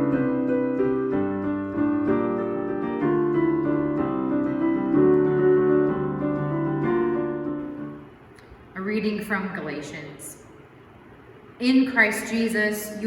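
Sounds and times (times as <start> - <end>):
piano playing slow chords: 0.0 - 8.5.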